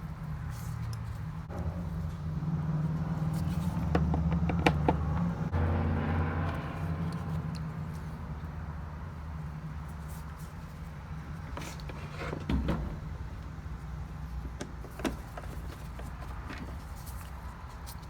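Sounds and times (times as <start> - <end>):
low hum: 1.5 - 9.1.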